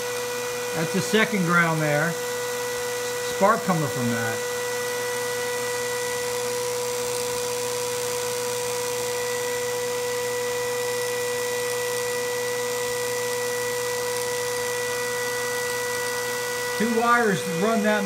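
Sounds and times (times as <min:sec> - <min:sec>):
fan motor electrical whine: 0:00.0 - 0:18.0.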